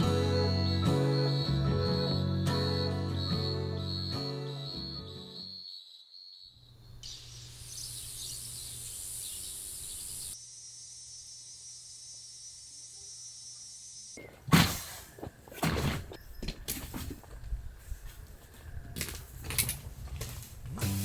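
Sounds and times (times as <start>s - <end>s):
high-pitched insect drone: 0.2s - 14.2s.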